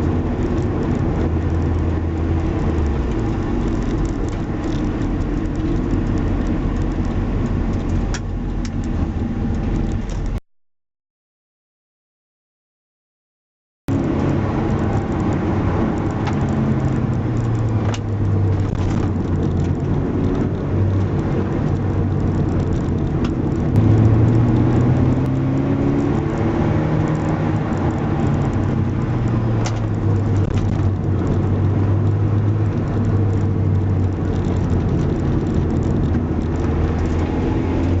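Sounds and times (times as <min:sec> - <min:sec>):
car engine running: 0:00.0 - 0:10.4, 0:13.9 - 0:38.0.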